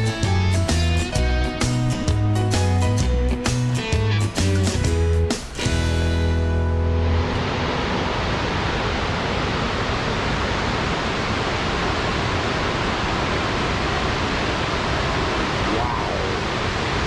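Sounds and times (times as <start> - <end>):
guitar music chord: 0.0 - 8.0
waterfall rushing: 7.4 - 17.0.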